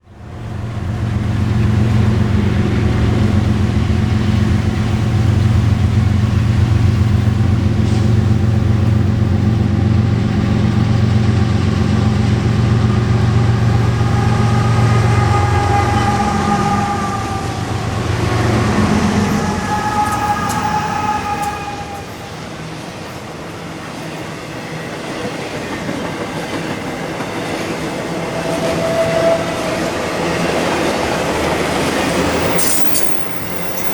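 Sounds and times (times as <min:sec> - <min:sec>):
locomotive diesel engines droning: 0:00.0 - 0:23.0, 0:27.0 - 0:33.9
railcars rolling: 0:00.0 - 0:33.9
train wheel squeal: 0:12.8 - 0:22.8, 0:27.9 - 0:33.9.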